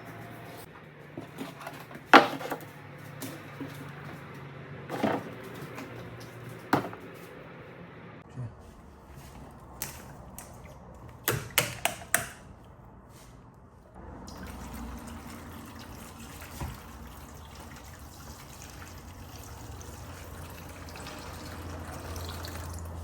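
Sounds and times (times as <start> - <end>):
water running: 14.3 - 23.0.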